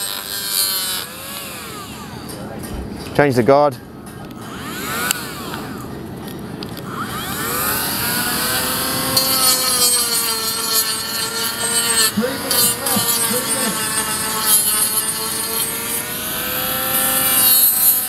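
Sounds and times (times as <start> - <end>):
mini grinder whine: 0.0 - 2.6, 4.2 - 18.0
rasping grinding on hoof: 8.5 - 18.0.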